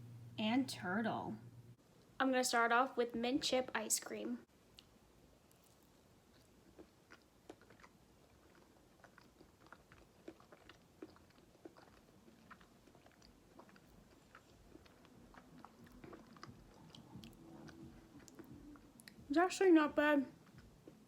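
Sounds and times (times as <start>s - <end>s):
person chewing a cookie: 4.7s - 19.3s, 20.4s - 21.0s.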